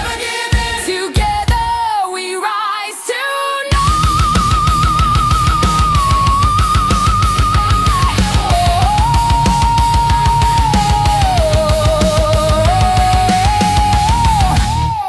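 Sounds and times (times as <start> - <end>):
fast kick drum: 0.0 - 1.8, 3.7 - 14.9.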